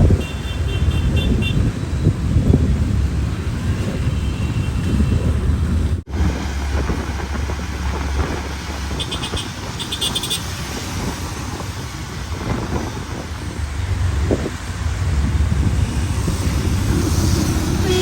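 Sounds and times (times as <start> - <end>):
traffic rumble: 0.0 - 18.0
traffic hiss: 15.5 - 18.0.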